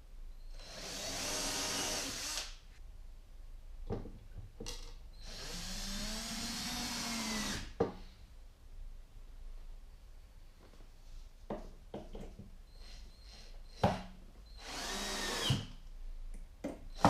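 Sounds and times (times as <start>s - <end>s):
cordless drill motor whine: 0.6s - 2.5s, 5.2s - 7.6s, 14.6s - 15.6s.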